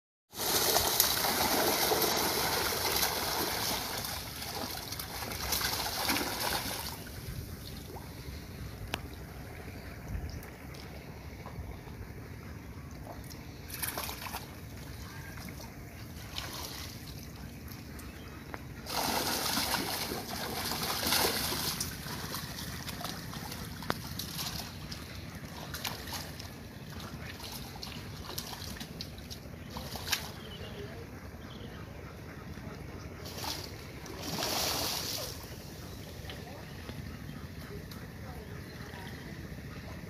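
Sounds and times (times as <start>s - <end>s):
rush of splashing: 0.3s - 10.0s, 13.5s - 17.4s, 18.8s - 30.4s, 33.2s - 36.6s
pond water splashing and trickling: 0.3s - 31.7s, 32.5s - 40.0s
steady low rumble: 2.2s - 40.0s.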